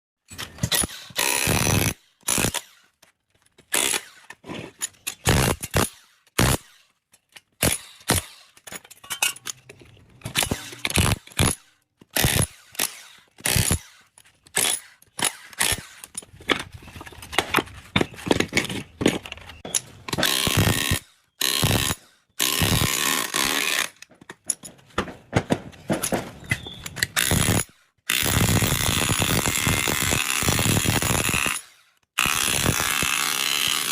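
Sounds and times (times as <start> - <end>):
power tool or ratchet running: 0.7 - 2.8, 10.4 - 16.0, 20.2 - 23.9
metal knocks and clanks: 24.0 - 27.2.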